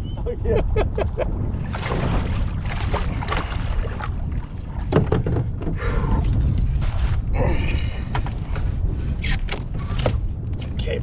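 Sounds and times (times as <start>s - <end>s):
wind rumble on microphone: 0.0s - 11.0s
knocks against boat: 4.8s - 5.9s, 9.4s - 10.2s.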